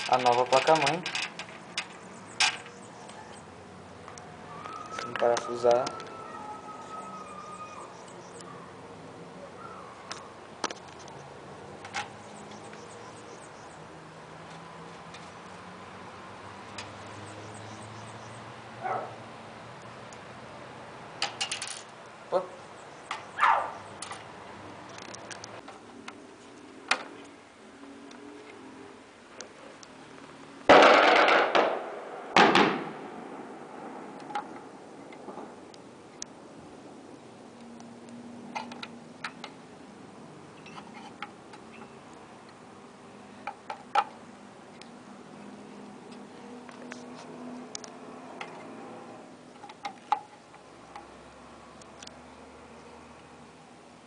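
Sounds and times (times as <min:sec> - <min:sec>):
screw bouncing metallic clicks: 0:00.0 - 0:02.8.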